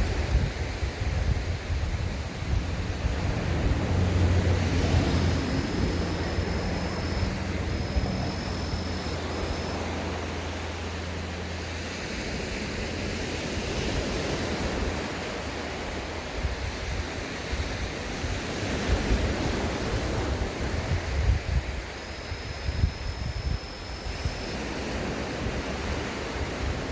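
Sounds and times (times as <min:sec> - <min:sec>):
wind buffeting microphone: 0:00.0 - 0:10.3
low steady hum: 0:01.2 - 0:16.9.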